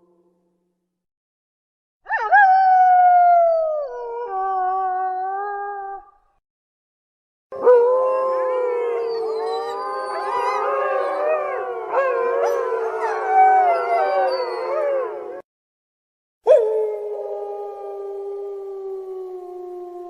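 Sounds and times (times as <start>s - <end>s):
dogs howling together: 7.6s - 15.4s, 16.5s - 20.0s.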